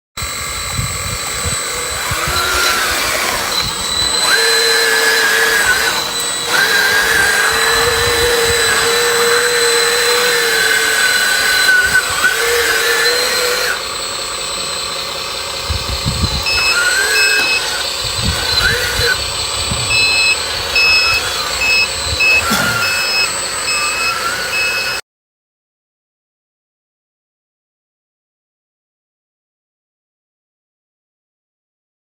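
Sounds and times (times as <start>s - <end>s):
electric motor whining: 0.2s - 25.0s.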